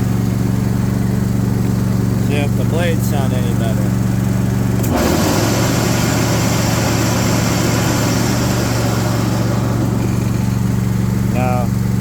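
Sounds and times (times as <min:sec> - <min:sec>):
riding mower engine running: 0:00.0 - 0:12.0
mower blades whirring: 0:04.6 - 0:11.0.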